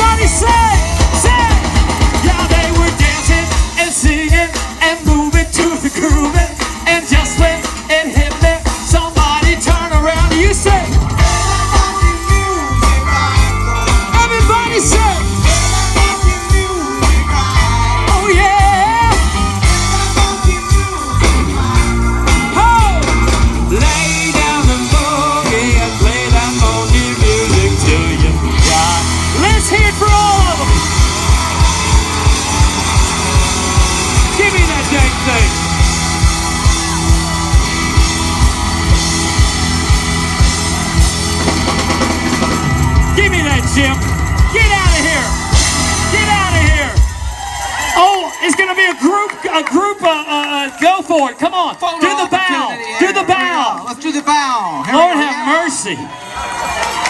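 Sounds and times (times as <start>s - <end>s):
person singing: 0.0s - 47.0s
steady drum beat: 0.0s - 50.4s
live rock band playing: 0.0s - 50.8s.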